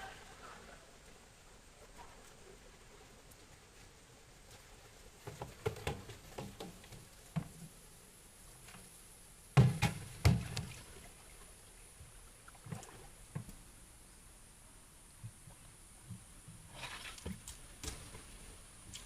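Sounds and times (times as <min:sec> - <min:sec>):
pond water splashing: 0:09.5 - 0:13.9, 0:15.3 - 0:19.0.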